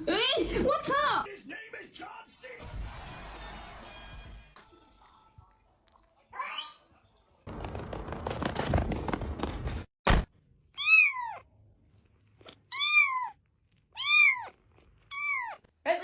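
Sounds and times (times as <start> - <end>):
crackling rustling noise: 7.5 - 9.9
cat meowing: 10.8 - 11.5, 12.4 - 15.7.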